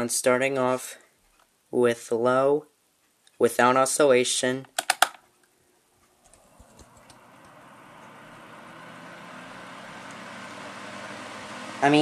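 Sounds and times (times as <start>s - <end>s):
fan blades and motor rushing: 6.1s - 12.0s.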